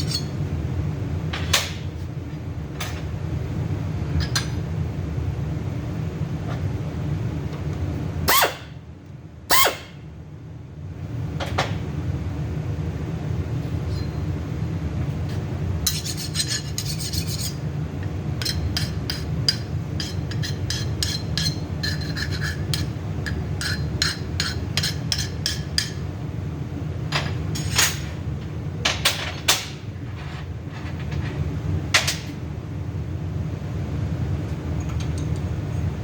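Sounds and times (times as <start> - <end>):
steady low hum: 0.0 - 36.0
file scraping steel: 15.9 - 17.6, 20.0 - 22.9.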